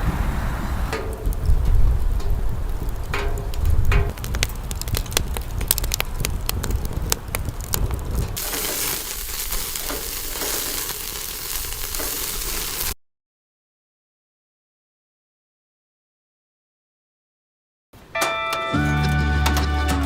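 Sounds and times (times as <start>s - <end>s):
wood fire crackling and popping: 0.9s - 13.0s
steady hiss: 8.4s - 13.0s.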